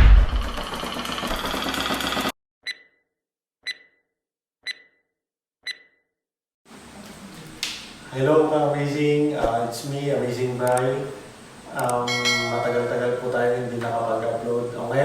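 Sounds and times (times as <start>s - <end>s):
short electronic beeps: 2.7s - 3.0s, 3.6s - 4.0s, 4.6s - 5.0s, 5.7s - 6.0s.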